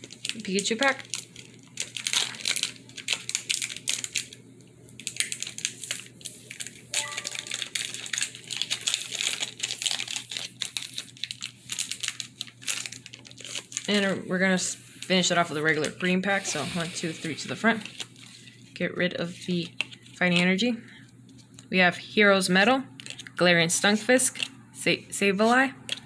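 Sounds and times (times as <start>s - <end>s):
foil wrapper crinkling and tearing: 0.0s - 14.1s, 17.3s - 18.7s, 23.0s - 23.3s.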